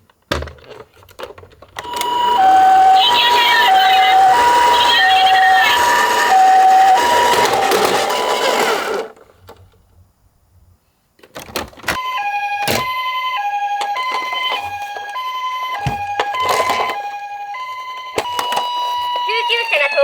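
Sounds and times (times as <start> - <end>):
toy siren two-tone hi-lo: 1.8 - 9.0, 12.0 - 20.0.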